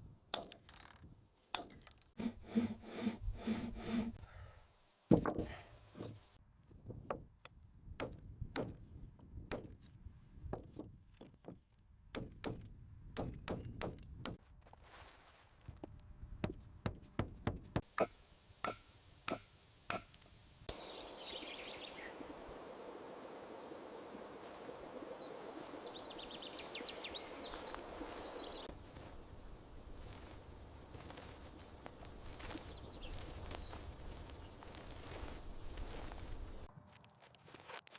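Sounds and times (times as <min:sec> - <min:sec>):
hand tools chopping timber: 0:10.6 - 0:14.4, 0:16.4 - 0:20.1
forest ambience: 0:17.8 - 0:37.9
birdsong: 0:20.7 - 0:22.5, 0:23.6 - 0:28.7, 0:31.5 - 0:34.6.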